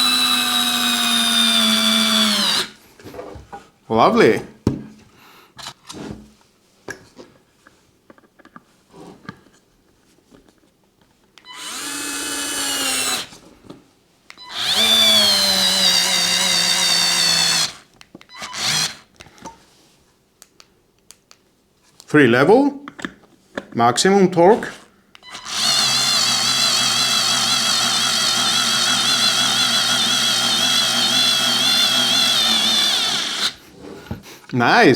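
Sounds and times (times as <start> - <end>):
cordless screwdriver motor whirring: 0.0 - 2.7, 11.5 - 13.3, 14.4 - 19.1, 25.2 - 33.6.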